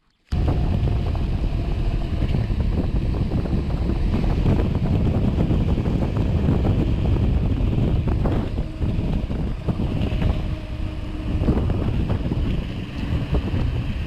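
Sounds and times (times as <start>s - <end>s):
wind buffeting microphone: 0.3s - 14.0s.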